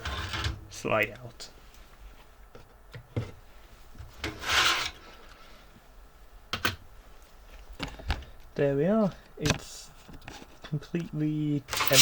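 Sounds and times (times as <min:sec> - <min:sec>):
parts scraping in computer case: 0:11.7 - 0:12.0.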